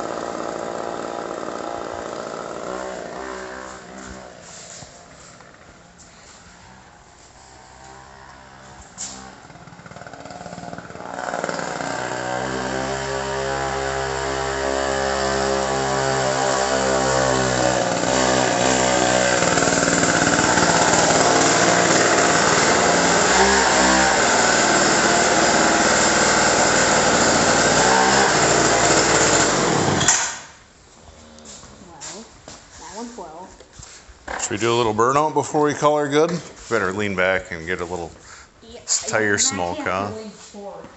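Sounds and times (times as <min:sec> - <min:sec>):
two-stroke engine revving: 0:00.0 - 0:05.6, 0:06.5 - 0:30.5.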